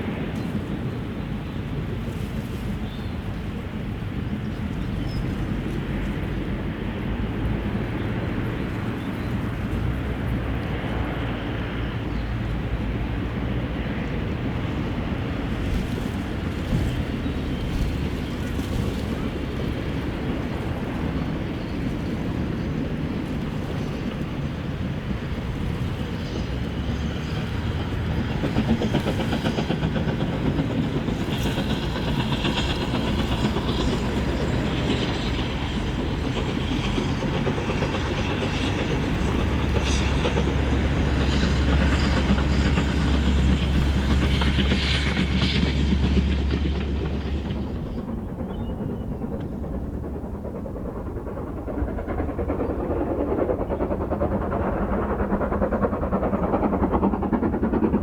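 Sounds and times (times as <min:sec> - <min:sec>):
steam locomotive running: 0:02.7 - 0:58.0.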